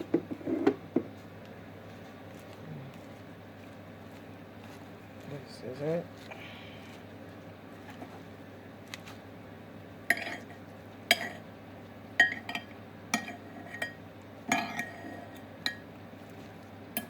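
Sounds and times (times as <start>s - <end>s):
utensils clinking on a bowl: 10.1s - 11.4s, 12.2s - 15.8s.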